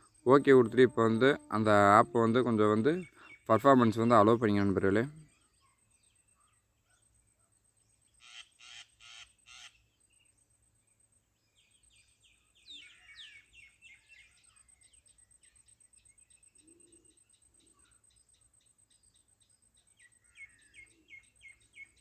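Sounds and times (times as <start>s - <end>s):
bird calls: 0.0s - 10.3s, 11.5s - 22.0s
bird chirps and twitters: 11.5s - 22.0s.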